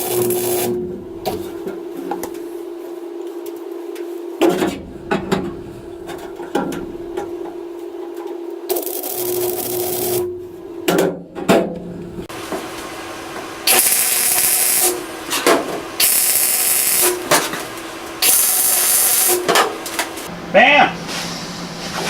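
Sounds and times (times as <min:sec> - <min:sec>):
mig welder welding steel: 0:00.0 - 0:01.0, 0:08.7 - 0:10.8, 0:12.3 - 0:20.3.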